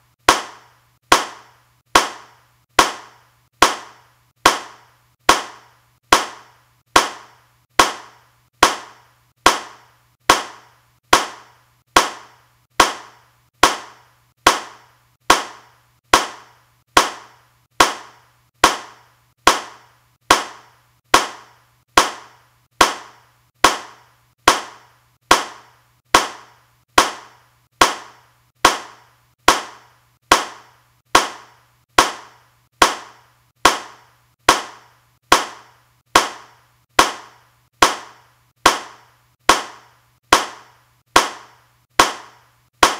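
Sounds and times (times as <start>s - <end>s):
handclaps: 0.3s - 42.9s.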